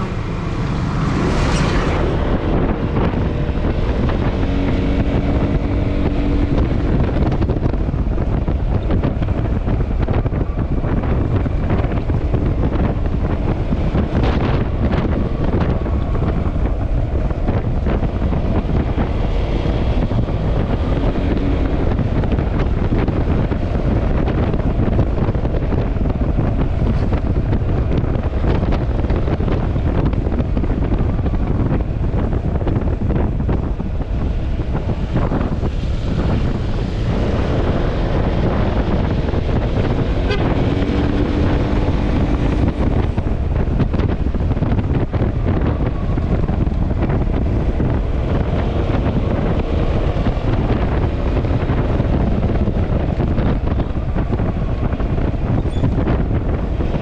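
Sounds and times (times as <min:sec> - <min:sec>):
scooter engine hum: 0:00.0 - 0:57.0
wind rushing over microphone: 0:00.0 - 0:57.0.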